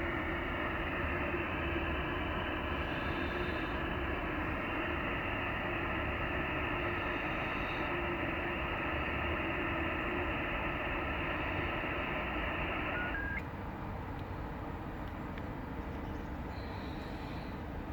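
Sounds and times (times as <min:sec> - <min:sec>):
radio receiver hiss: 0:00.0 - 0:13.5
many steady digital tones: 0:10.2 - 0:13.4.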